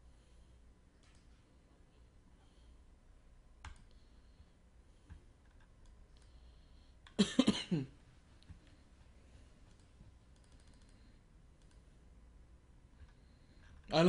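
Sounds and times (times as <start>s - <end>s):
computer mouse and keyboard clicks: 1.0s - 1.4s, 3.6s - 4.1s, 5.1s - 6.4s, 9.6s - 11.9s.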